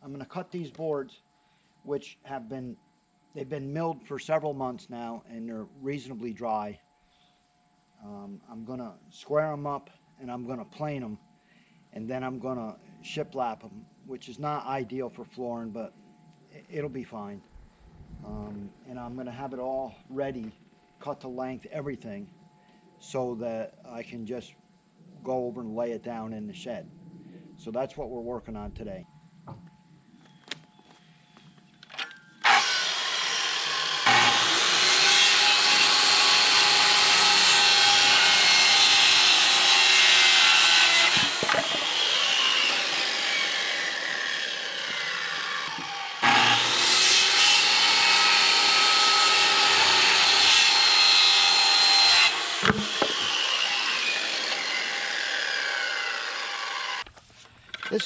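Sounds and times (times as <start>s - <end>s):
circular saw cutting wood: 32.4s - 57.1s.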